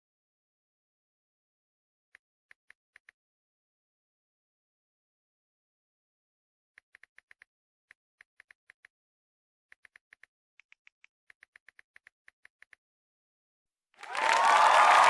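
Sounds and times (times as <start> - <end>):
crowd cheering and applause: 14.0 - 15.0.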